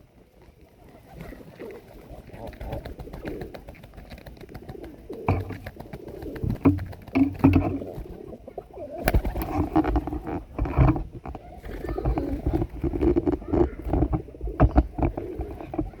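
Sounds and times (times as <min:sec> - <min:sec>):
dull thumps: 0:05.3 - 0:08.1, 0:09.2 - 0:16.0.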